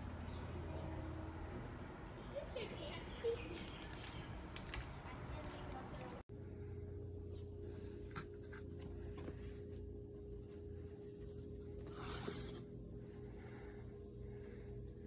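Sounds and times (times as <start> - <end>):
faint clicks: 3.6 - 5.1
steady low hum: 5.9 - 15.0.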